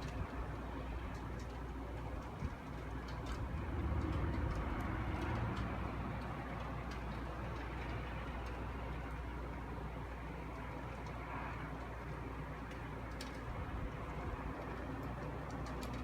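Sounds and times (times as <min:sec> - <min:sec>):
low rumbling noise: 0:02.2 - 0:09.2.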